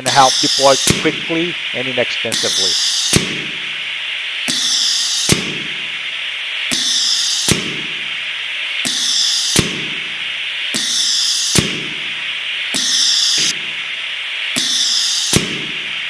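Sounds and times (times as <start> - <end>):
sharp valve clicks: 0.0 - 1.4, 2.3 - 3.6, 4.4 - 5.5, 6.7 - 7.7
hiss of air: 0.0 - 16.0.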